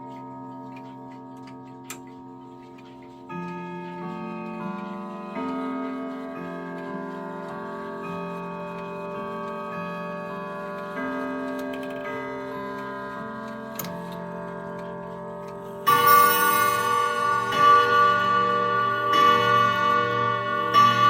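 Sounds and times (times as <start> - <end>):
clock chime notes: 0.0 - 21.0
loud bright clock strike: 15.6 - 21.0.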